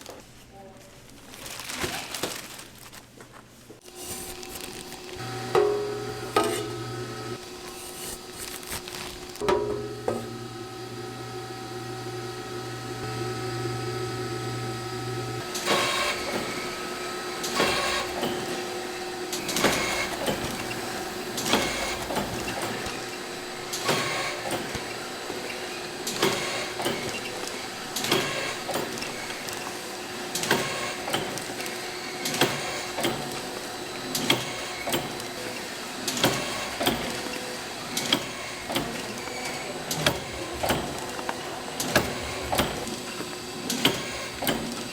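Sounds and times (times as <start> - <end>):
machinery hum: 4.0 - 44.9
mechanical clatter with clacks: 19.3 - 44.9.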